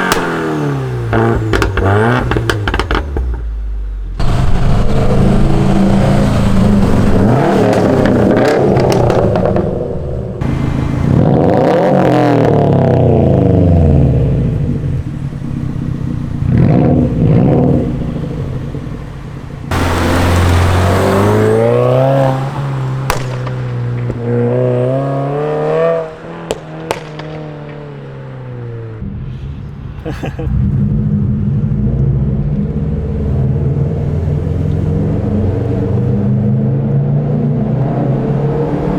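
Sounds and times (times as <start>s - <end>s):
car engine free-revving: 4.2s - 29.0s.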